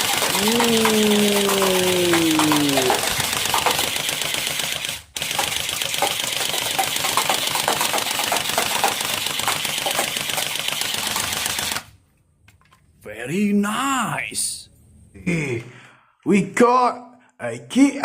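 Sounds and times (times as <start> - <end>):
toy gun rapid clicking: 0.0 - 12.0.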